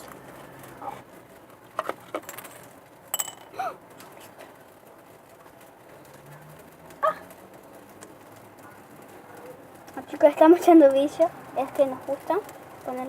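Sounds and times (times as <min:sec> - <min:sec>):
small objects clicking and clinking: 0:01.4 - 0:04.4.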